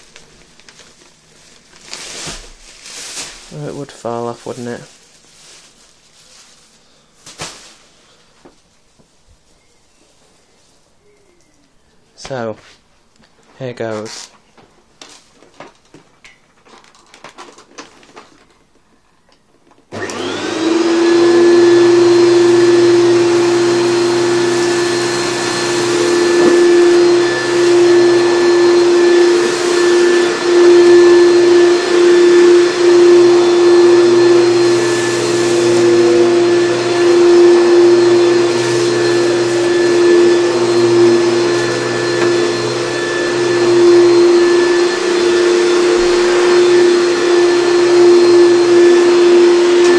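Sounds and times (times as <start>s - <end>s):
vacuum cleaner motor humming: 19.9s - 49.9s.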